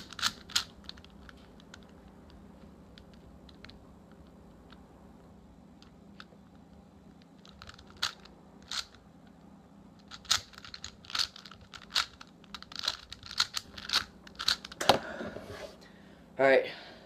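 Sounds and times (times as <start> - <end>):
puzzle cube clicking: 0.0 - 2.4, 7.1 - 9.0, 10.0 - 14.8.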